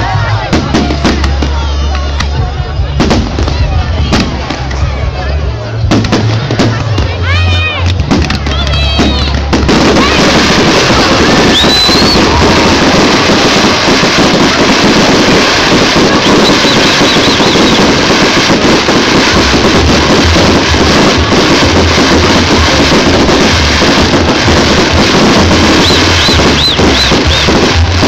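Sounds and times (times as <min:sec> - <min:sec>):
steady bass beat: 0:18.4 - 0:28.0.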